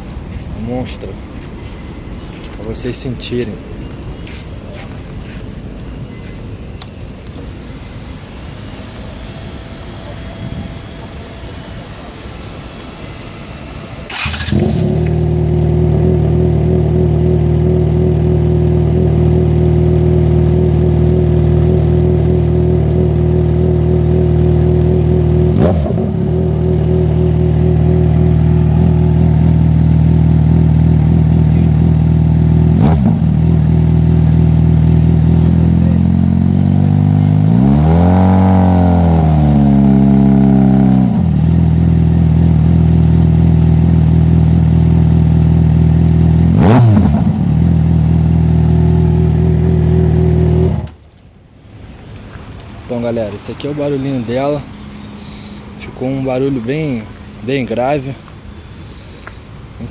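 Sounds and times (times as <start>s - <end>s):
motorcycle engine revving: 8.4s - 51.0s
motorcycle engine starting and idling: 8.6s - 51.4s.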